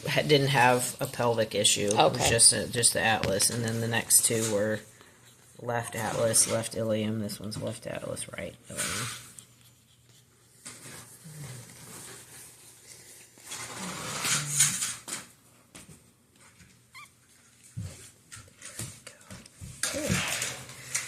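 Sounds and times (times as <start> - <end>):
puppy squeaking and whimpering: 16.9 - 17.2.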